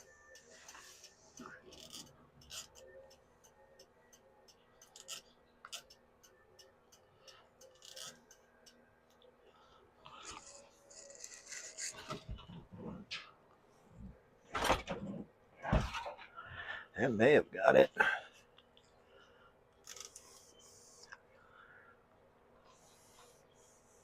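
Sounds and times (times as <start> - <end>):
small clicks of parts: 0.0 - 9.3, 19.7 - 21.2
parts rubbing and rustling: 10.1 - 13.3.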